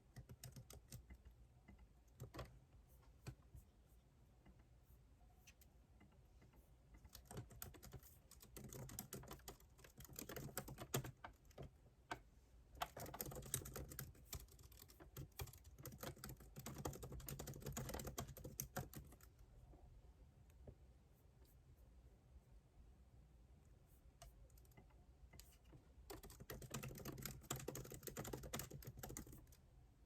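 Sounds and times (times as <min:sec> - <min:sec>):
typing on computer keyboard: 0:00.0 - 0:02.6, 0:07.0 - 0:11.8, 0:12.8 - 0:19.4, 0:24.5 - 0:29.6.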